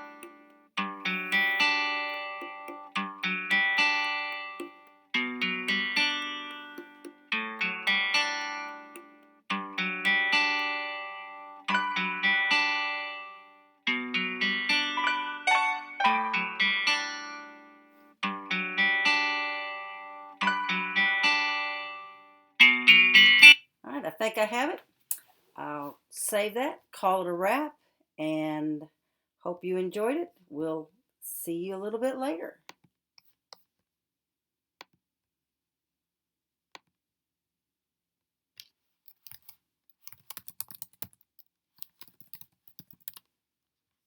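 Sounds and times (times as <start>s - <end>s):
acoustic guitar playing: 0.0s - 23.6s
computer mouse clicks: 38.6s - 43.3s.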